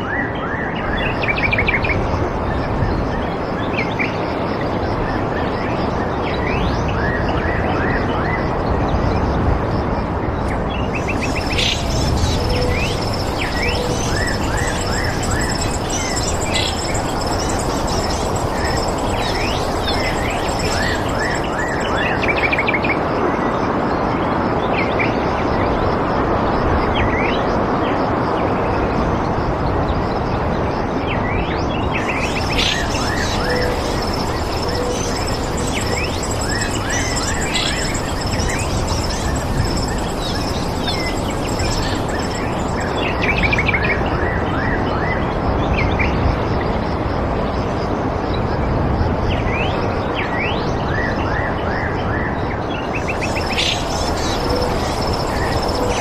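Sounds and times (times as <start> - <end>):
steady rushing noise: 10.5 - 23.2, 31.9 - 43.8, 52.9 - 56.0
small birds chirping: 10.8 - 22.6, 32.0 - 43.5, 53.0 - 56.0
high-pitched buzz: 11.0 - 22.6, 32.0 - 43.4.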